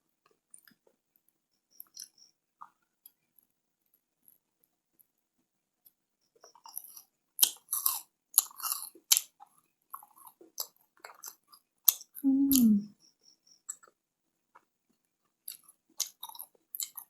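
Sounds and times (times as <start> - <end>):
crunching and chewing sweet: 1.7 - 3.2, 6.3 - 12.6, 13.5 - 17.0
person humming: 12.2 - 12.9
wet mouth clicks: 12.2 - 12.9.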